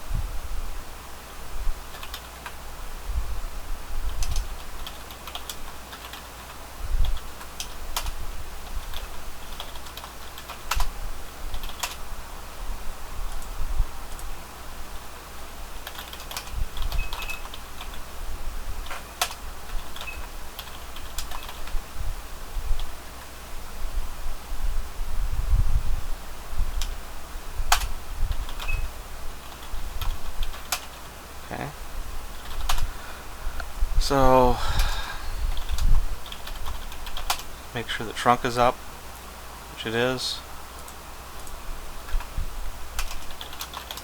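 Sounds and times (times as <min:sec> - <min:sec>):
keyboard typing clicks: 0:01.9 - 0:02.6, 0:04.1 - 0:08.2, 0:08.8 - 0:10.9, 0:11.5 - 0:12.0, 0:15.8 - 0:18.0, 0:18.8 - 0:21.8, 0:27.7 - 0:31.0, 0:32.4 - 0:32.9, 0:34.8 - 0:37.5, 0:43.0 - 0:44.0.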